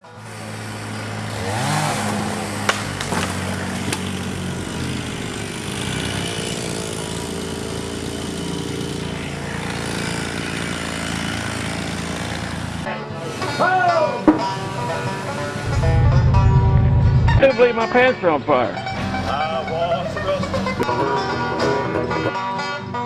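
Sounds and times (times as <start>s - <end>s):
engine running and revving: 0.0s - 12.9s, 15.6s - 17.5s.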